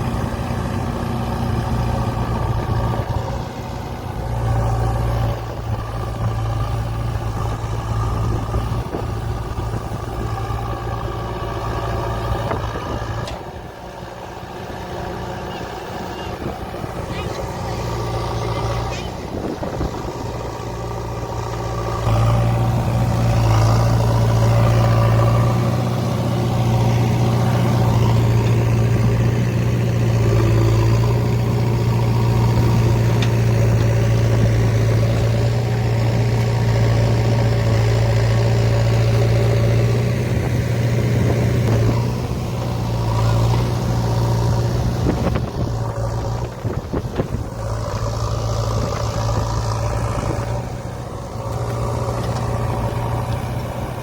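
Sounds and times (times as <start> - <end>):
diesel engine running hard: 0.0 - 54.0.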